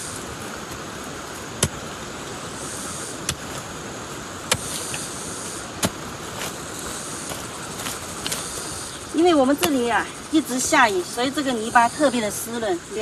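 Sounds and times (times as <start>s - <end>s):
digging tool chopping wet soil: 1.5s - 2.0s, 3.1s - 3.7s, 4.4s - 8.6s.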